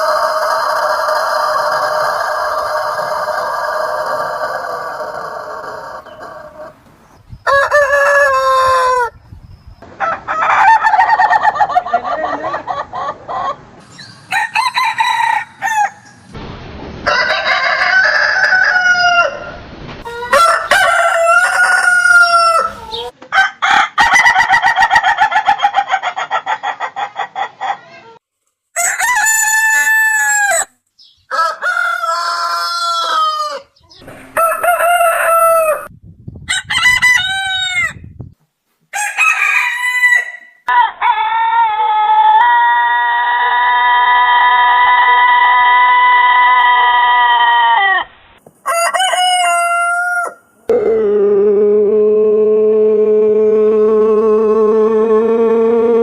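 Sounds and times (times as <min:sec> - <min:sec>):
roosters crowing: 0:00.0 - 0:06.8, 0:07.4 - 0:09.2, 0:09.9 - 0:11.8, 0:14.0 - 0:16.2, 0:17.0 - 0:26.4, 0:28.8 - 0:30.7, 0:31.3 - 0:35.9, 0:36.5 - 0:38.0, 0:38.9 - 0:51.0.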